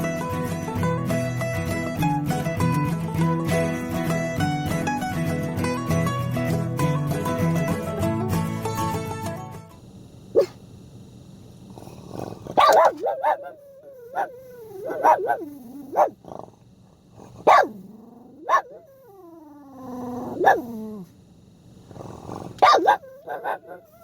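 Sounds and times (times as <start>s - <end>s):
dog whining: 10.4s - 10.6s, 12.1s - 16.2s, 17.5s - 21.1s, 21.9s - 24.0s
dog yelping: 10.4s - 10.6s, 12.6s - 16.2s, 17.5s - 21.0s, 22.6s - 24.0s.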